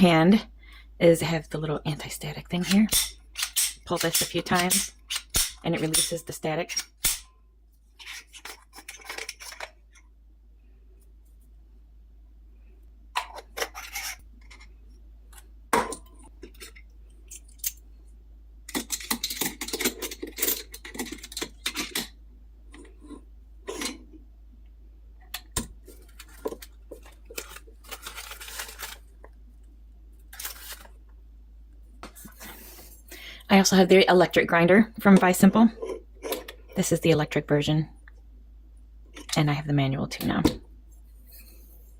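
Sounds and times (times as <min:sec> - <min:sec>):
metal coffee grinder parts clinking: 0:08.0 - 0:09.7
rustling: 0:25.8 - 0:29.2.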